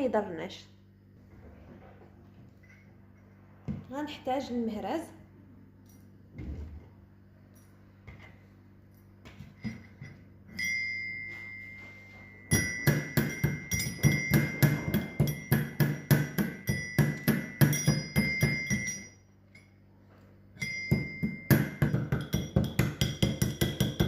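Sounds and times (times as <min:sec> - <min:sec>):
pestle pounding in metal mortar: 0:12.5 - 0:19.1, 0:20.6 - 0:24.0.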